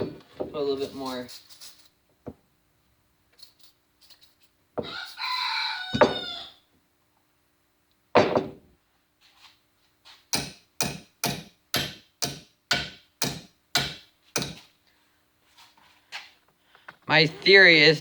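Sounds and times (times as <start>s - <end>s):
hammer striking metal pliers: 10.3s - 14.6s.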